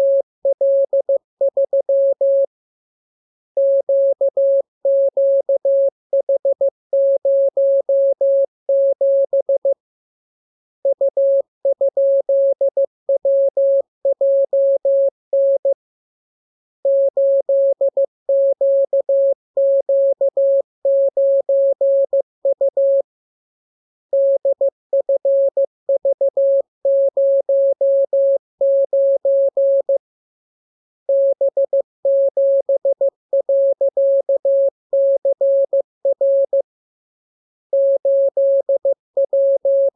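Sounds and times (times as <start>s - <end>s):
morse code beeps: 24.2s - 30.0s, 31.1s - 36.6s, 37.7s - 39.9s.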